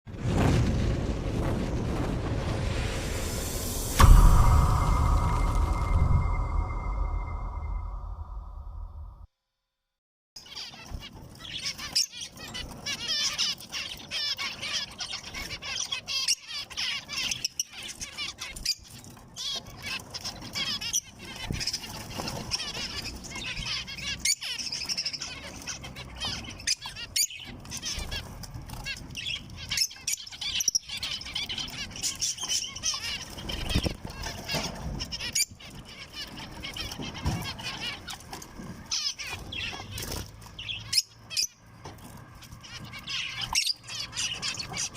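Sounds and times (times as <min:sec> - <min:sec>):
finches chirping and calling: 0:10.4 - 0:41.6, 0:42.4 - 0:44.9.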